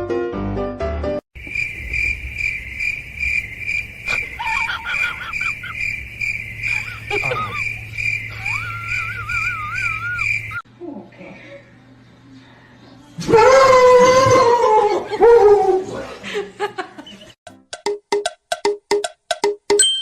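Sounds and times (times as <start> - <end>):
cricket chirping: 1.4 - 10.6
wavering whistle-like call: 6.7 - 10.6.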